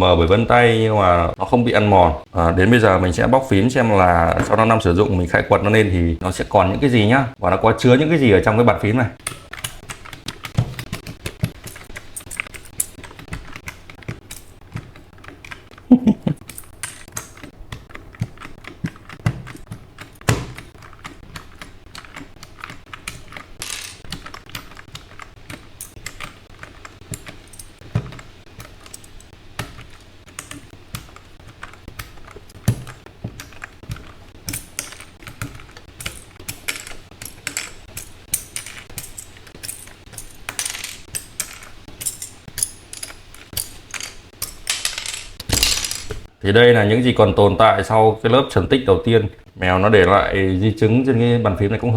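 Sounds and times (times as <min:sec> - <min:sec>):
plastic keycaps clicking and snapping: 0:09.2 - 0:46.2.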